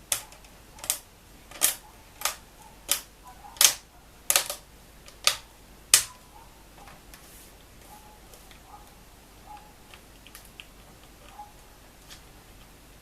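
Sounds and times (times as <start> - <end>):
plastic clips snapping into place: 0.1 - 6.2.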